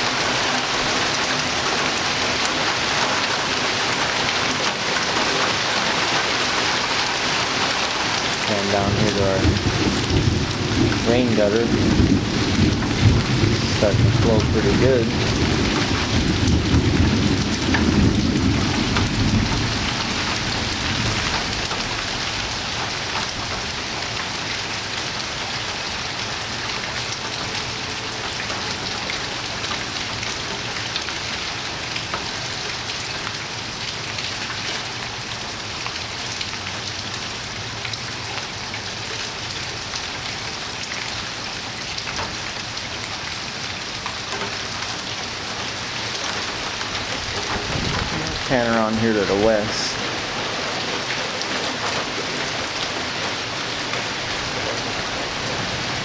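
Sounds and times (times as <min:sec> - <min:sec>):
heavy rain hissing: 0:00.0 - 0:56.0
low rumble of thunder: 0:08.6 - 0:24.1, 0:47.0 - 0:48.6.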